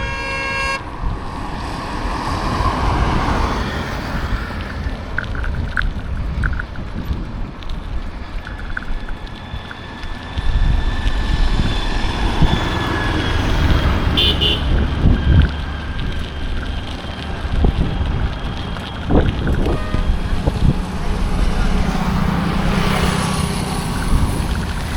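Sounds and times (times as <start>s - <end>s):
car horn toot: 0.0s - 0.9s, 14.1s - 14.9s, 19.6s - 20.3s
road traffic rumble: 0.0s - 24.9s.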